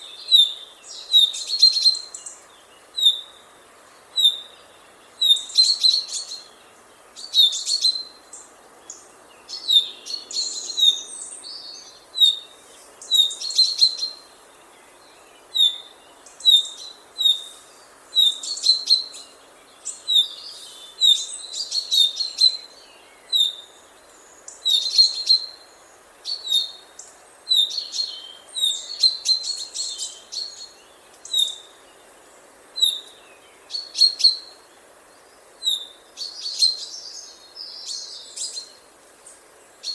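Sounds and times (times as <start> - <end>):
chaffinch calling: 0.0 - 3.4, 7.2 - 14.4, 24.4 - 25.6.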